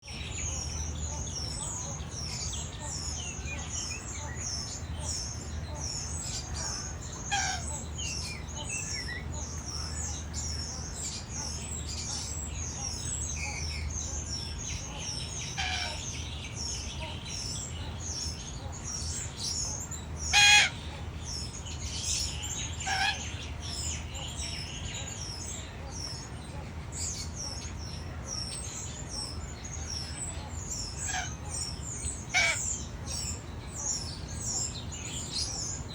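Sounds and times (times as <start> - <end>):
birds chirping: 0.0 - 35.9
steady low hum: 0.0 - 35.9
parrots squawking: 6.4 - 7.9, 15.5 - 16.1, 20.2 - 21.0, 22.5 - 23.5, 30.0 - 33.3.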